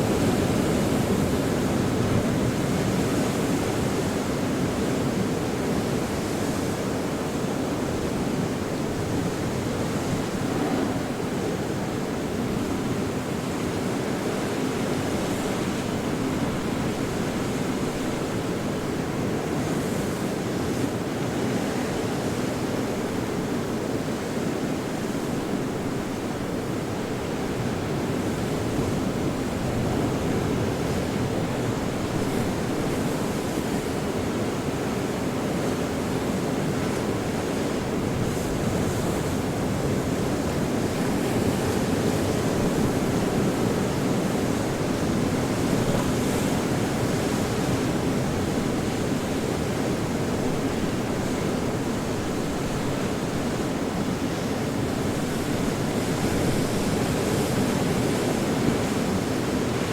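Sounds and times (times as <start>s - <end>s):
ocean waves breaking: 8.9s - 13.3s.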